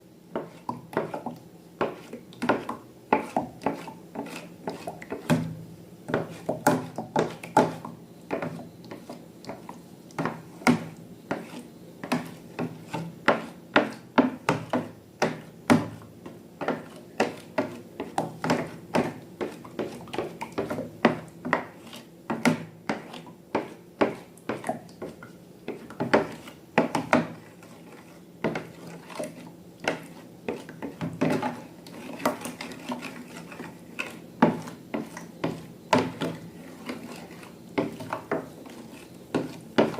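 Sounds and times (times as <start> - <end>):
objects tapping and rubbing: 0.4 - 5.5, 6.1 - 39.9.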